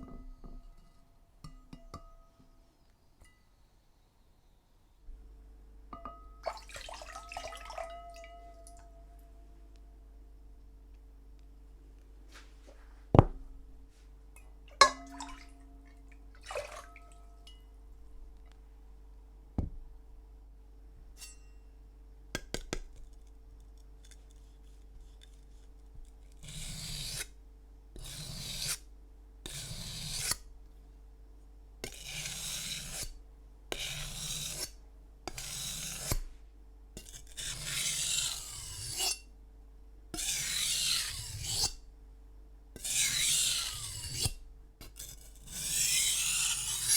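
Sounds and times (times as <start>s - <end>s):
knife on whetstone: 21.2s - 21.6s, 26.4s - 27.3s, 28.0s - 28.8s, 29.5s - 30.4s, 31.8s - 33.1s, 33.7s - 34.7s, 35.3s - 36.3s, 37.0s - 39.3s, 40.2s - 41.8s, 42.8s - 46.9s.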